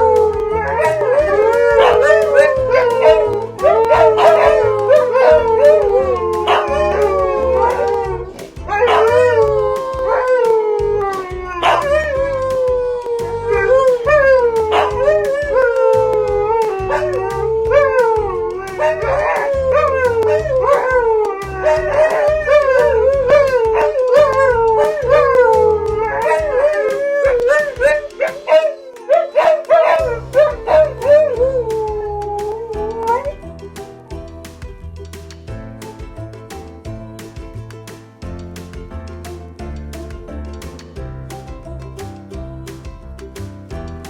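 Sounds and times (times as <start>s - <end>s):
husky howling: 0.0s - 33.3s.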